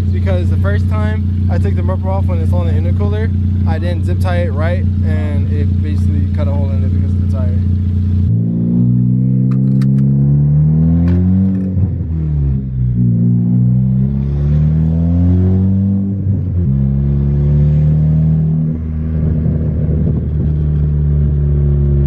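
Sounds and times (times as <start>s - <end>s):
turbocharged car engine revving: 0.0s - 22.0s.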